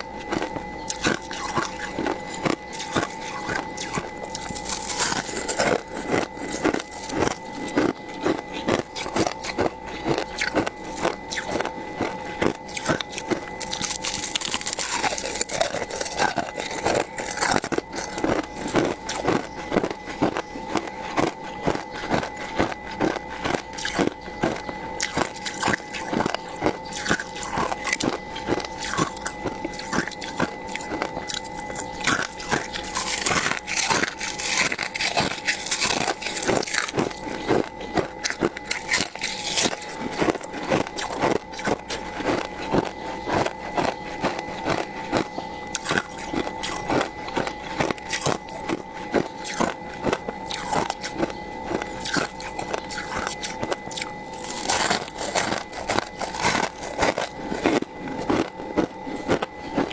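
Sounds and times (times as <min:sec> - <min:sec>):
faint steady hum: 0:00.0 - 0:59.9
freezer frost being scraped: 0:00.9 - 0:11.6, 0:12.3 - 0:20.3, 0:25.0 - 0:37.6, 0:52.0 - 0:58.4.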